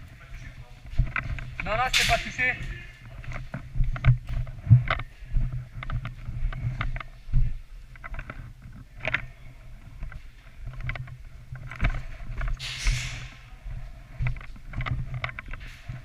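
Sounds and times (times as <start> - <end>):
microphone handling rumble: 0.0 - 16.0
sharp clicks and knocks: 0.9 - 5.1, 14.1 - 16.0.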